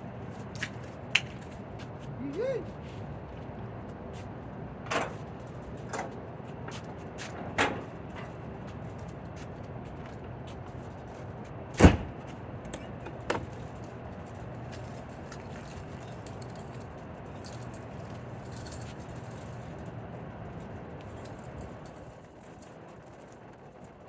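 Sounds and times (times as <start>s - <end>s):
keys jangling: 0.3s - 1.6s, 12.7s - 24.0s.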